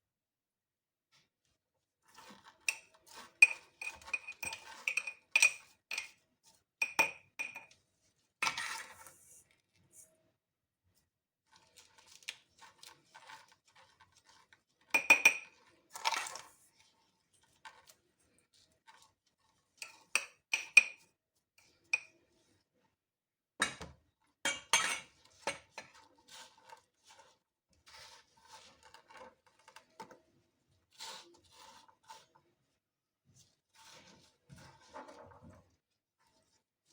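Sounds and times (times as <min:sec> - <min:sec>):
cutlery clinking against dishes: 0:15.0 - 0:15.5, 0:19.8 - 0:21.0, 0:24.5 - 0:25.8
light tapping and scraping: 0:24.6 - 0:30.3, 0:33.3 - 0:36.6.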